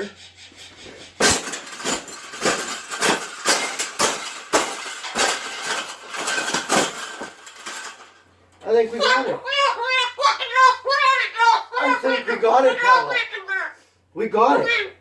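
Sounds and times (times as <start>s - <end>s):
wire cage clanking and rattling: 1.1s - 9.2s.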